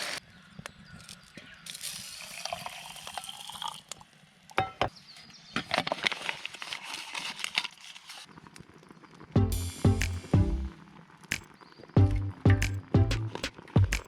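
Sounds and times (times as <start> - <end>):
water pouring into a container: 1.7 - 4.0.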